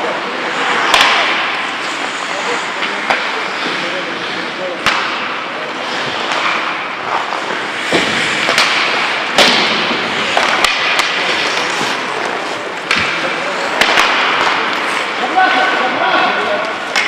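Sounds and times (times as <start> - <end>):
skates hissing on ice: 0.0 - 13.8
hockey sticks knocking puck: 0.0 - 17.0.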